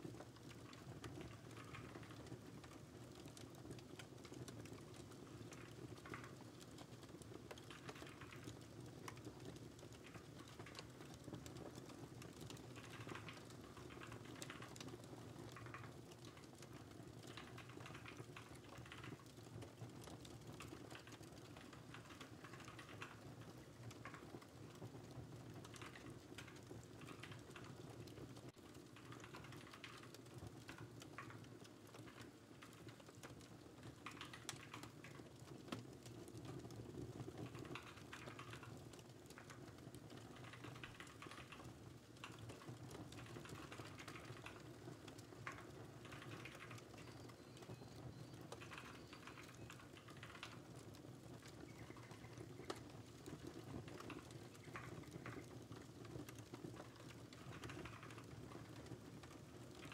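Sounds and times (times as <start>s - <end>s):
fireplace crackle: 0.0s - 59.9s
computer keyboard typing: 34.0s - 35.2s, 40.4s - 44.6s, 45.4s - 50.9s, 56.8s - 58.3s.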